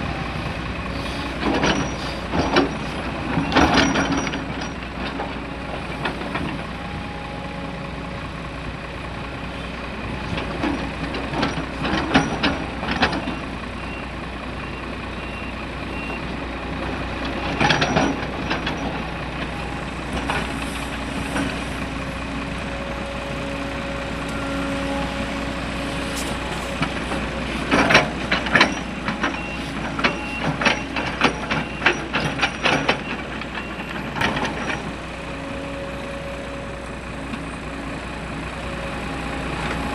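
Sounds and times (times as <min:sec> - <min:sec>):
heavy diesel machinery running: 0:00.0 - 0:39.9
truck reversing beeper: 0:12.6 - 0:16.3, 0:17.5 - 0:39.9.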